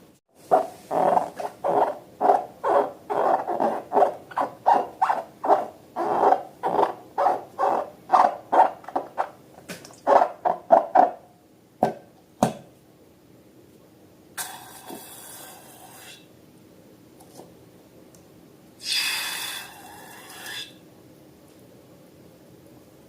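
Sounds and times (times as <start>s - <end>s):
rubber balloon squeaking: 0.5s - 9.4s, 10.0s - 11.2s.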